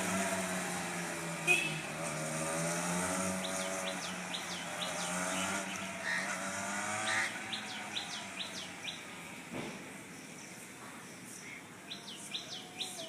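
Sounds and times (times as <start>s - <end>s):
bird chirping: 3.2s - 9.4s, 10.0s - 13.0s.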